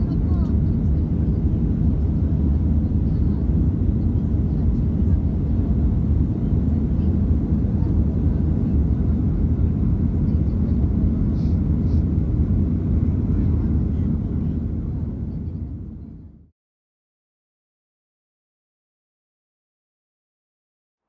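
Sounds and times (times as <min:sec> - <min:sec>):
jet airliner engines: 0:00.0 - 0:16.5.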